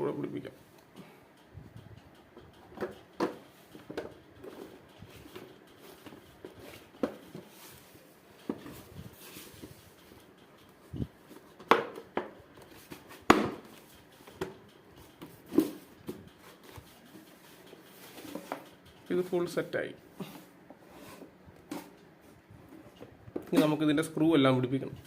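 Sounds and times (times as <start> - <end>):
plastic parts clicking and knocking: 2.2 - 7.6, 8.4 - 19.1, 21.6 - 23.9.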